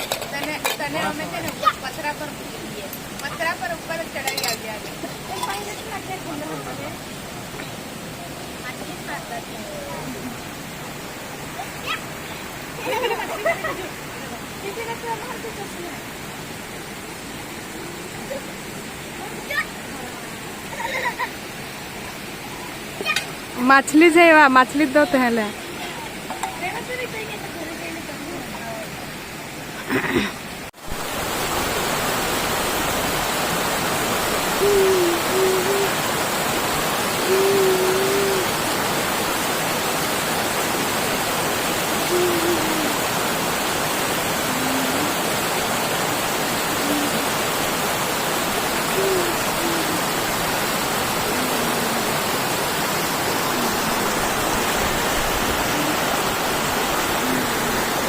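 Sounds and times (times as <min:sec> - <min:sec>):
waterfall rushing: 0:00.0 - 0:58.0
low hooting calls: 0:34.5 - 0:36.4, 0:37.2 - 0:38.8, 0:41.9 - 0:43.3, 0:48.7 - 0:58.0.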